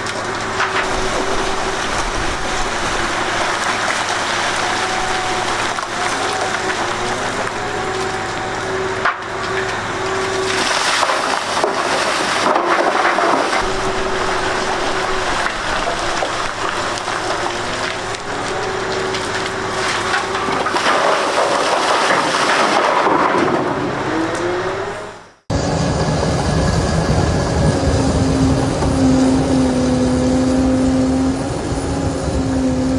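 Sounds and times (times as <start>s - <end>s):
faint engine tone: 23.8s - 32.9s.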